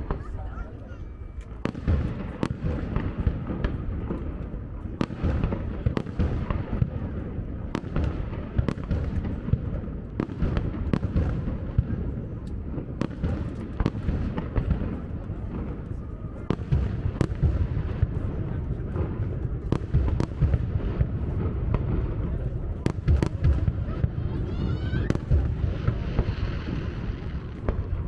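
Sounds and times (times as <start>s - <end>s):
fireworks bangs: 0.0s - 28.0s.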